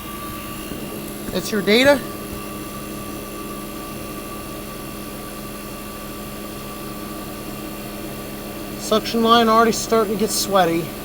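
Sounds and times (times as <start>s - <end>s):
fan rushing: 0.0s - 4.9s
compressor humming: 0.0s - 11.0s.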